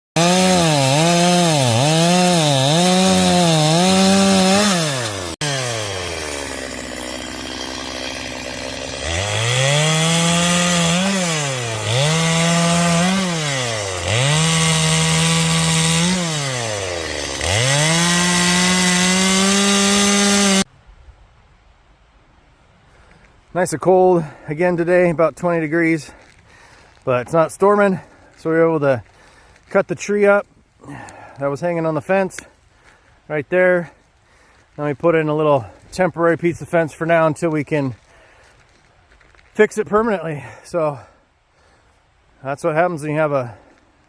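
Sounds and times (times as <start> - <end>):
chainsaw cutting wood: 0.2 - 20.7.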